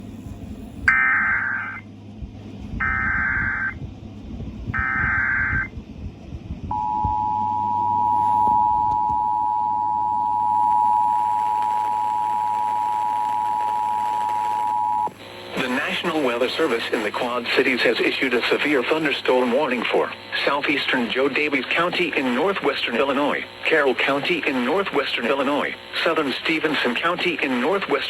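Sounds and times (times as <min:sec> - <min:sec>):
low hum: 0:00.0 - 0:23.7
screeching data bursts: 0:00.9 - 0:01.8, 0:02.8 - 0:03.8, 0:04.8 - 0:05.7
two-tone attention signal: 0:00.9 - 0:01.8, 0:04.8 - 0:05.7, 0:06.7 - 0:15.1.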